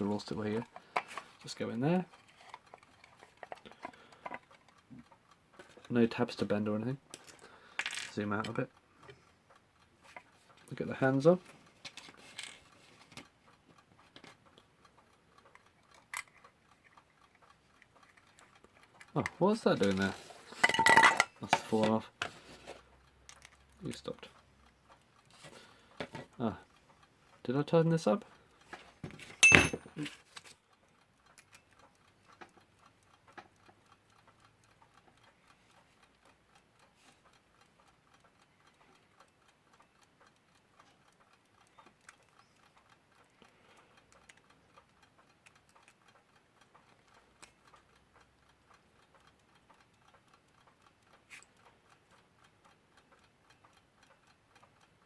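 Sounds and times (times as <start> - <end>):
alarm clock ticking: 0.0 - 11.8, 13.2 - 22.2, 30.7 - 55.0.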